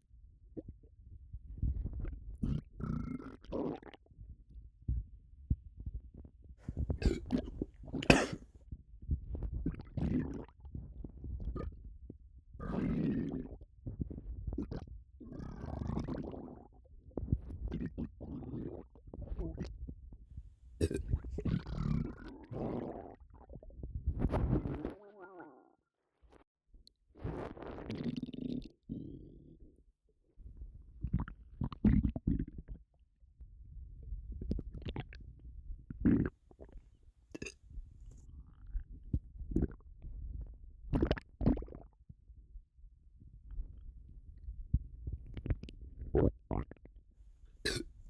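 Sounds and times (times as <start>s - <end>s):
stomach gurgling: 1.6s - 4.0s, 6.7s - 8.4s, 9.4s - 10.6s, 12.6s - 19.7s, 20.8s - 25.7s, 27.2s - 29.3s, 31.0s - 32.7s, 34.4s - 35.3s, 36.0s - 36.8s, 39.4s - 39.9s, 40.9s - 42.0s, 45.0s - 46.9s, 47.7s - 47.9s.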